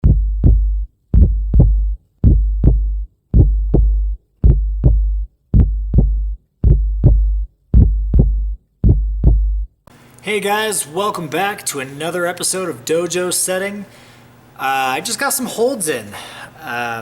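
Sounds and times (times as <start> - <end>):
deep bass tone: 0.0 - 9.8
heartbeat-like double thump: 0.0 - 9.8.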